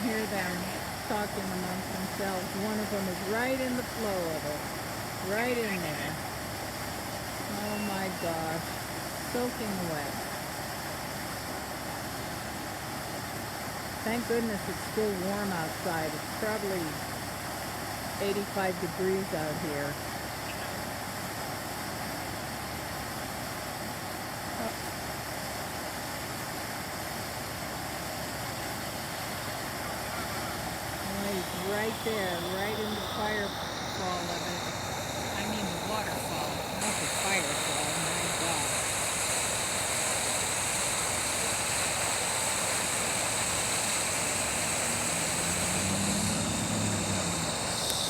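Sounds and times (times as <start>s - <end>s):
water gushing from fire hydrant: 0.0s - 48.0s
water jet rushing: 29.4s - 48.0s.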